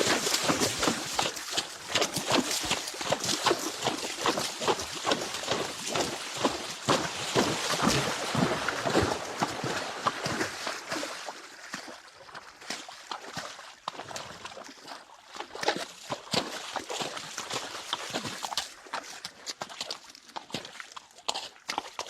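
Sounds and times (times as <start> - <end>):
horse hooves splashing in water: 0.0 - 22.0.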